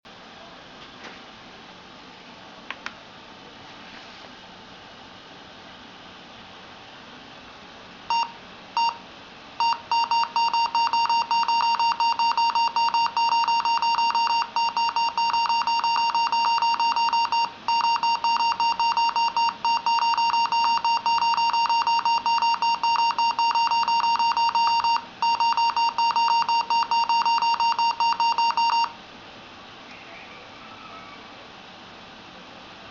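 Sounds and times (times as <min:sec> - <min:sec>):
laptop high-pitched beeps: 0:08.1 - 0:09.0, 0:09.6 - 0:29.0.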